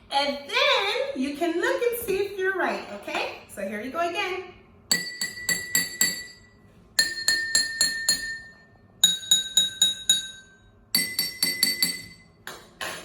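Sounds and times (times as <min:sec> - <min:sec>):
spoon tapping water glasses: 0:04.9 - 0:12.7.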